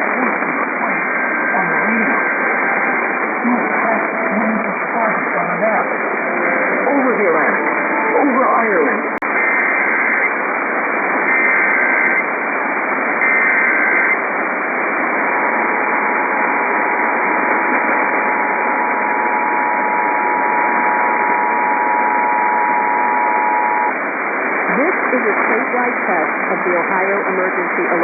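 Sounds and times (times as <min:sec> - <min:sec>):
static hiss: 0:00.0 - 0:28.0
two-tone attention signal: 0:18.8 - 0:24.0.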